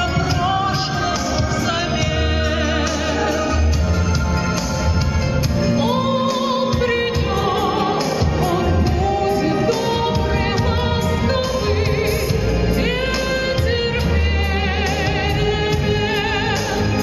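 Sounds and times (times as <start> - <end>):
woman singing pop ballad: 0.0 - 4.5, 5.5 - 17.0
backing track with pulsing bass: 0.0 - 17.0.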